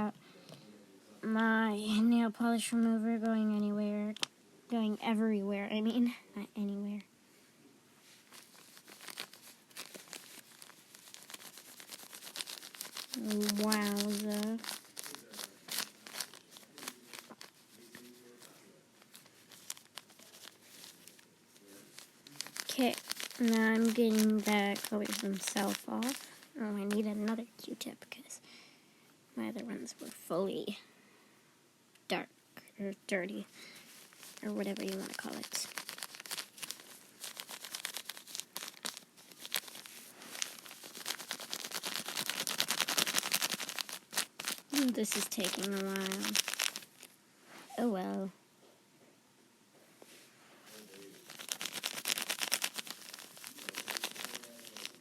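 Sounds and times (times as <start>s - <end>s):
plastic bag crinkling: 8.2s - 27.4s, 33.5s - 47.1s, 50.7s - 55.0s.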